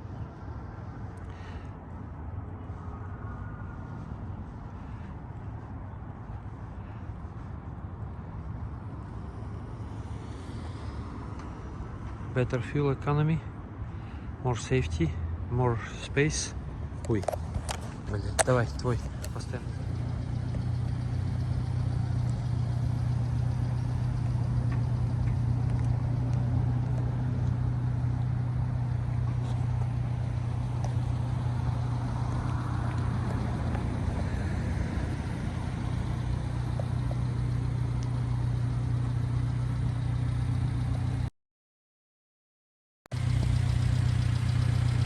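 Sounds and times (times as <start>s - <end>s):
small engine idling: 18.2s - 41.2s, 43.1s - 45.0s.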